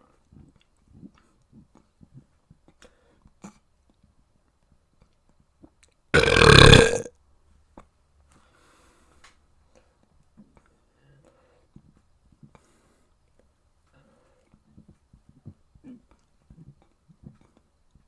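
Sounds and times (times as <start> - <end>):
person burping: 6.2 - 7.1.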